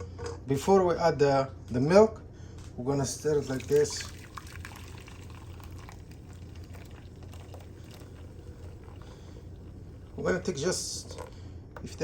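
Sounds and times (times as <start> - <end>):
steady low hum: 0.0 - 12.0
liquid swishing: 3.0 - 11.3.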